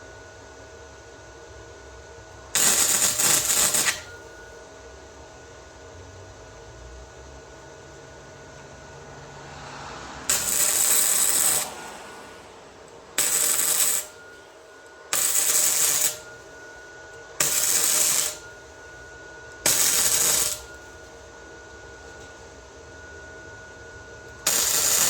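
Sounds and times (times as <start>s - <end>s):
welder arcing: 2.5s - 4.2s, 10.2s - 12.0s, 13.1s - 14.4s, 15.1s - 16.4s, 17.4s - 18.6s, 19.6s - 20.9s, 24.4s - 25.0s.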